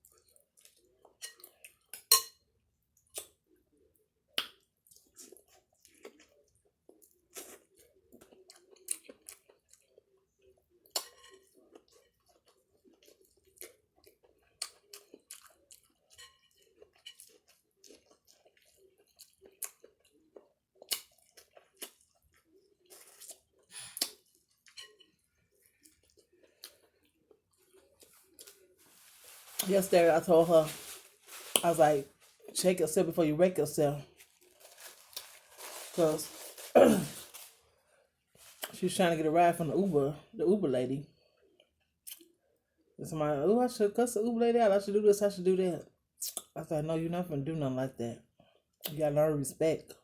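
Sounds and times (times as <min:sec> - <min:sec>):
person chewing food: 0:03.0 - 0:29.1.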